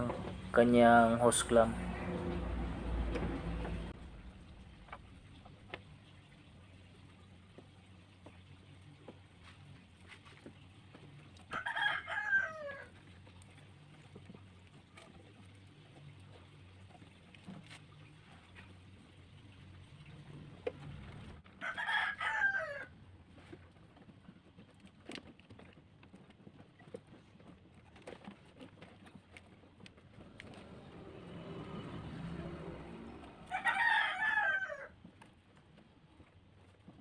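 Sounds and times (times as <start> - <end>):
rooster crowing: 11.5 - 12.9, 21.6 - 22.9, 32.2 - 35.0.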